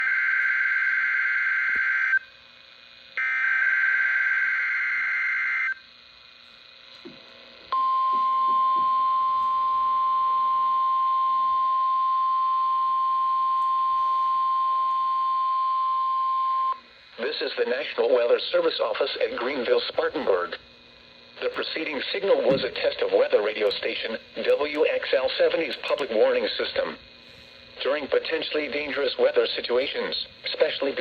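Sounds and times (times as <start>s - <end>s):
steady warning alarm tone: 0.0s - 2.3s, 3.2s - 6.5s, 7.7s - 17.3s.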